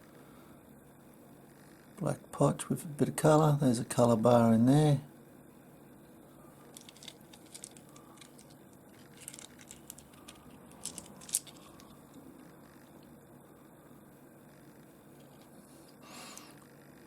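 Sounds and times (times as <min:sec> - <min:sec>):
small stones clicking and tapping: 0:06.7 - 0:11.9.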